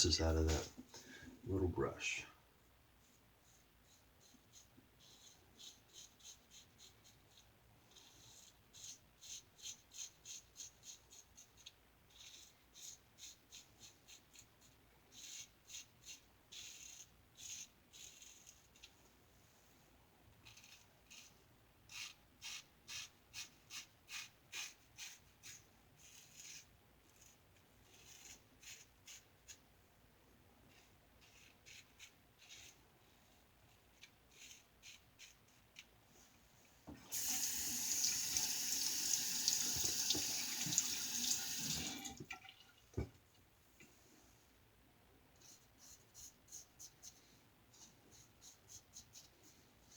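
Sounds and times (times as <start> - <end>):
tap running: 36.9 - 43.2.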